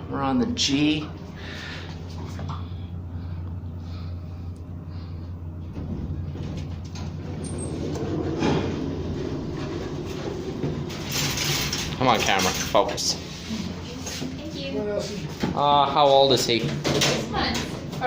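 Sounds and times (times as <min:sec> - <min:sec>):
elevator machinery rumble: 0:00.0 - 0:18.0
elevator mechanical hum: 0:00.0 - 0:18.0.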